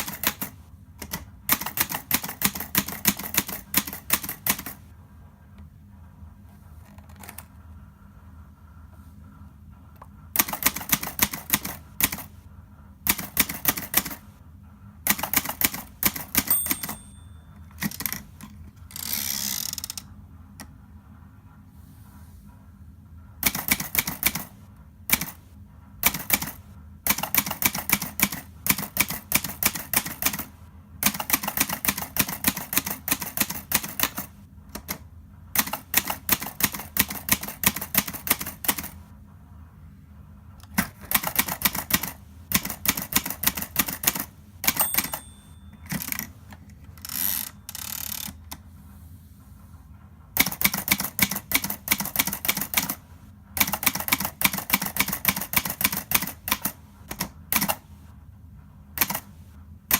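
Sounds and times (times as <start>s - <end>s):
typewriter key strikes: 0.0s - 4.8s, 10.4s - 12.3s, 13.1s - 14.2s, 15.1s - 18.3s, 23.4s - 25.4s, 26.0s - 35.0s, 35.6s - 39.0s, 40.7s - 46.3s, 50.4s - 53.0s, 53.6s - 57.8s, 59.0s - 59.3s
typewriter bell ringing: 16.1s - 18.2s, 44.1s - 46.2s.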